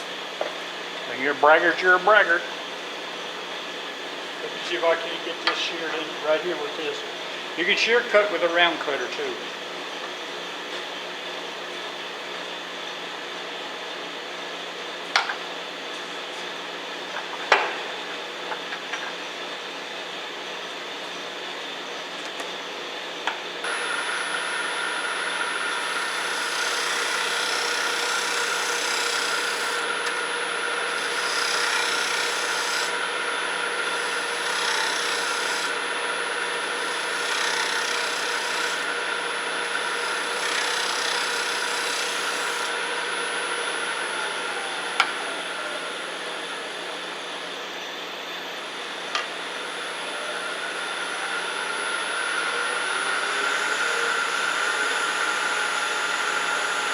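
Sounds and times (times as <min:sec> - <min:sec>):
wood lathe motor whine: 0:00.0 - 0:14.6, 0:21.6 - 0:56.9
cutter scraping spinning wood: 0:23.7 - 0:46.0.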